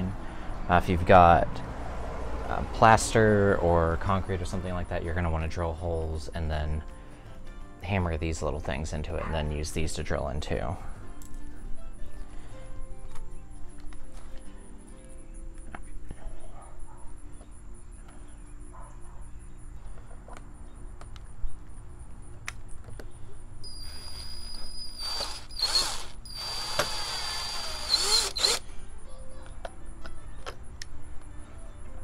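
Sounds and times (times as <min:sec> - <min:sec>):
power drill boring through siding: 0:23.7 - 0:28.6.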